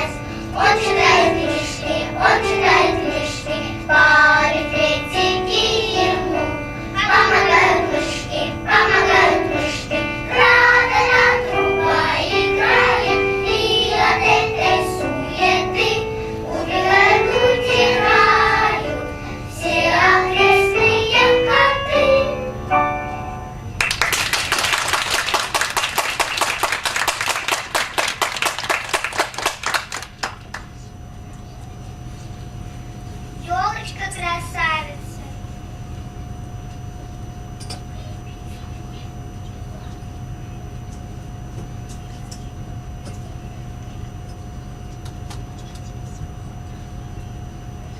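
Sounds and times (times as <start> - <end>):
children's choir singing: 0.0 - 23.4
accompaniment sustaining a chord: 0.0 - 33.4
audience applause: 23.8 - 30.7.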